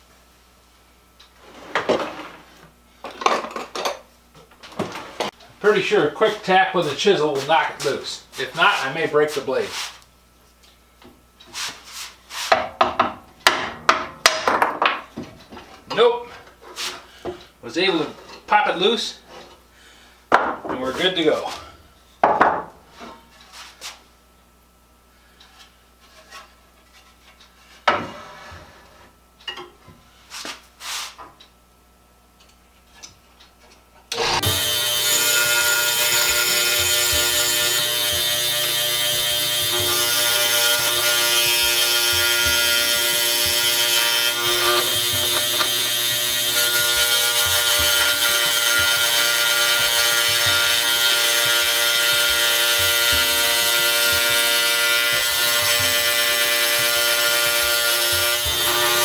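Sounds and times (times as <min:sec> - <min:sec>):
electric jigsaw sawing wood: 0:34.1 - 0:59.0.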